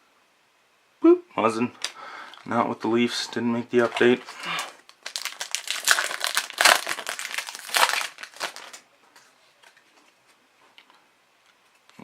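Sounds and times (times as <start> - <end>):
foil wrapper crinkling: 3.8 - 8.9.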